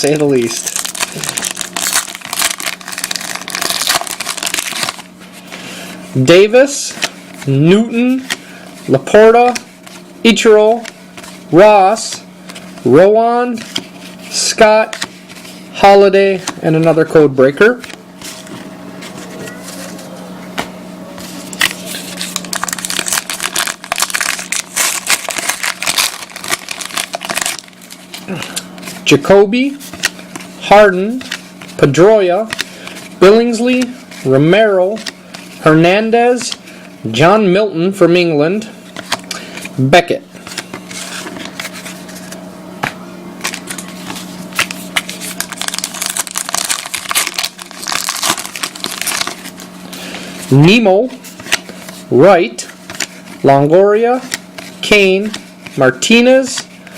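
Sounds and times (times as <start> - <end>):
plastic wrapper tearing and crinkling: 0.0 - 5.1, 21.5 - 28.6, 43.4 - 49.7
cards rustling: 0.0 - 38.2, 38.9 - 56.9.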